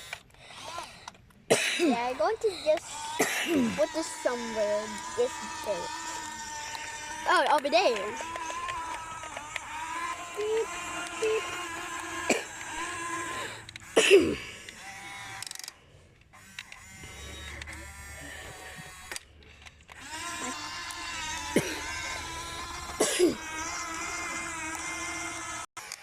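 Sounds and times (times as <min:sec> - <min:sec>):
toy electric motors whining: 0:00.0 - 0:26.0.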